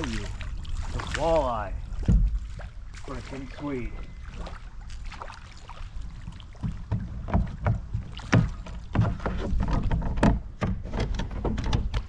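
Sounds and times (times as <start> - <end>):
water splashing: 0.0 - 12.0
knocks and thumps on kayak: 1.8 - 5.2, 5.9 - 12.0.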